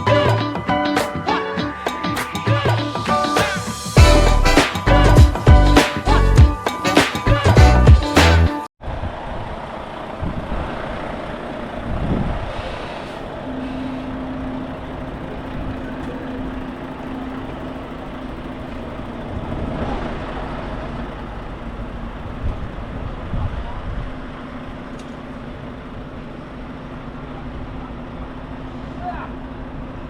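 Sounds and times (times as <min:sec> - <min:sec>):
heavy vehicle engine running: 0:09.0 - 0:30.0.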